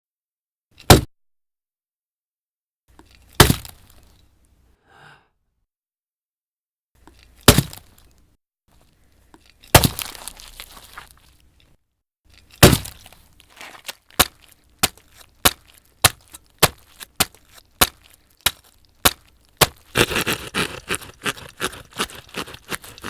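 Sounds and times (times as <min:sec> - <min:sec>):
crunching crackle: 0:07.0 - 0:23.0
hacking and crushing hits: 0:09.7 - 0:10.5, 0:12.6 - 0:13.1, 0:14.2 - 0:23.0.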